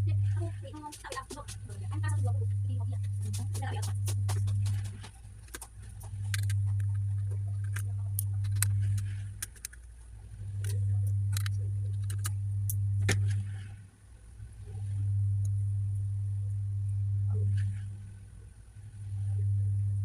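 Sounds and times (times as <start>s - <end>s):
low steady hum: 0.0s - 20.0s
clicks and taps of small parts: 5.4s - 7.0s, 7.6s - 9.9s, 10.6s - 12.3s.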